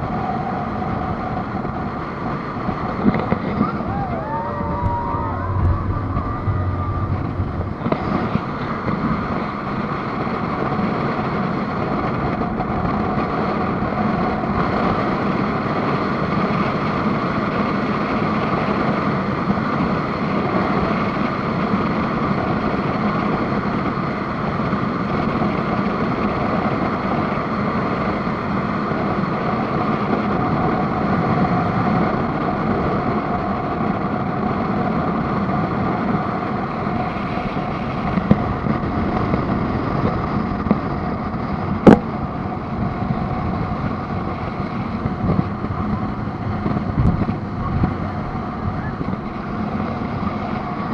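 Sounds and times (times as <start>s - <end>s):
rushing water: 0.0s - 18.9s
speedboat engine drone: 0.0s - 50.9s.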